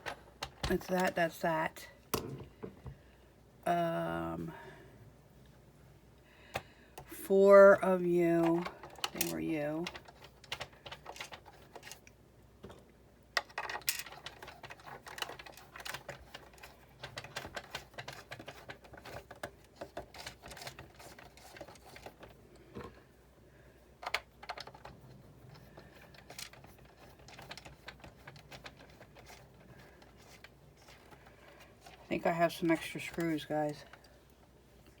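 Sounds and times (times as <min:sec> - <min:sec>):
plastic and metal parts clicking: 0:08.4 - 0:12.0, 0:13.4 - 0:22.9, 0:24.0 - 0:32.1.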